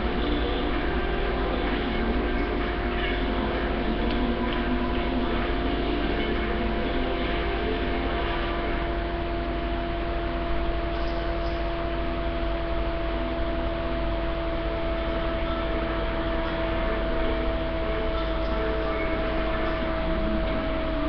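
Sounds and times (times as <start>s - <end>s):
constant two-tone hum: 0.0s - 21.0s.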